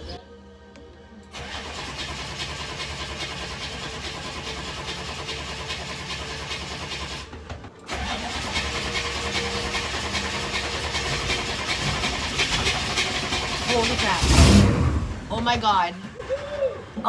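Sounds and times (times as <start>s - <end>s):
diesel engine cranking: 1.3s - 17.0s.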